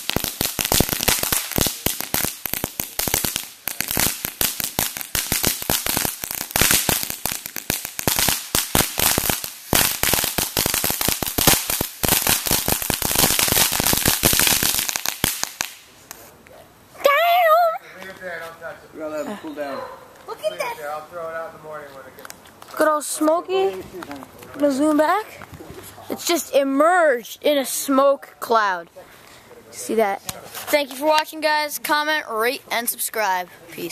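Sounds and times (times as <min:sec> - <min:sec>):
firework crackling pops: 0:00.0 - 0:16.4, 0:30.0 - 0:33.9.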